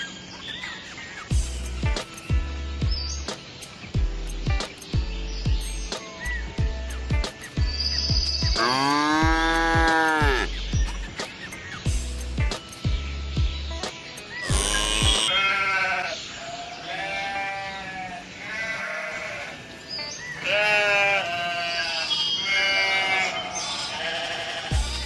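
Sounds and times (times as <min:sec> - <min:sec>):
music with drum beat: 0:01.3 - 0:15.3, 0:24.7 - 0:25.0
sheep bleating: 0:08.6 - 0:10.5, 0:14.5 - 0:19.7, 0:20.4 - 0:25.0.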